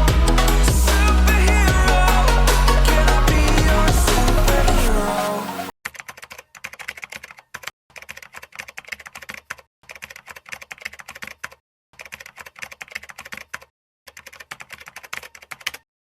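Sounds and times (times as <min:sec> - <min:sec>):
computer keyboard typing clicks: 0:05.9 - 0:15.8.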